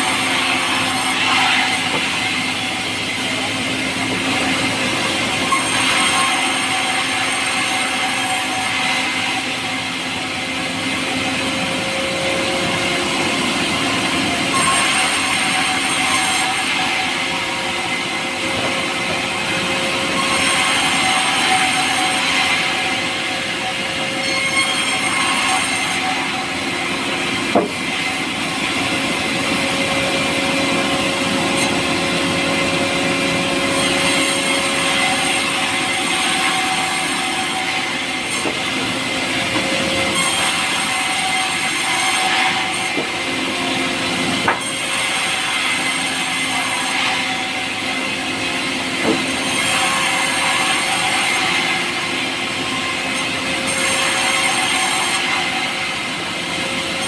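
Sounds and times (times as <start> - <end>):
power saw cutting wood: 0.0 - 57.0.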